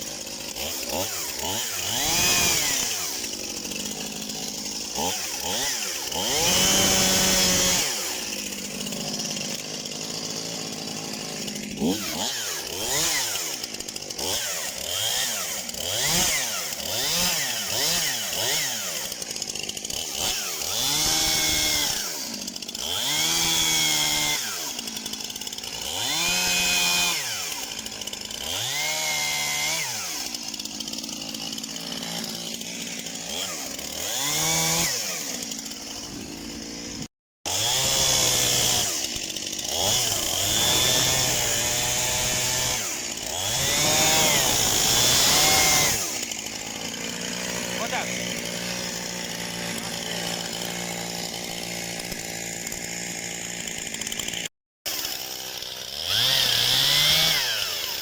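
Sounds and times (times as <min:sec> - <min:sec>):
chainsaw engine revving: 0:00.0 - 0:58.0.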